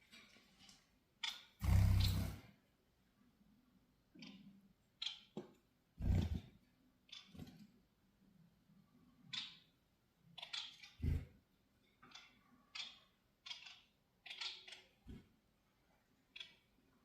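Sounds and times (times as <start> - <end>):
finches chirping: 1.6 - 2.4.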